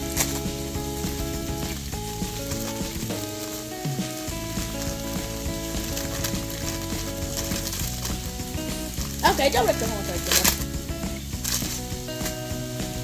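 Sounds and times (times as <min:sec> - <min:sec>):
background music: 0:00.0 - 0:13.0
plastic packaging crackling: 0:00.0 - 0:13.0.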